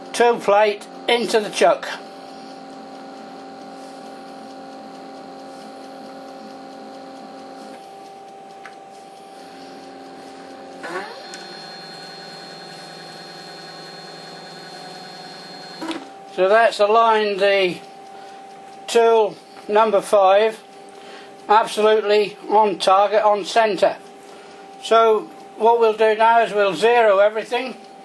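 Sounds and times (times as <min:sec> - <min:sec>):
stepper motor whining: 0:09.0 - 0:16.6
higher motor whine: 0:09.0 - 0:16.9.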